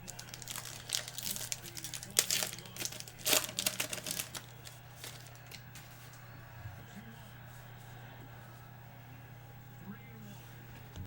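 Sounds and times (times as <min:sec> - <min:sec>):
cards snapping and rustling: 0:00.0 - 0:06.1.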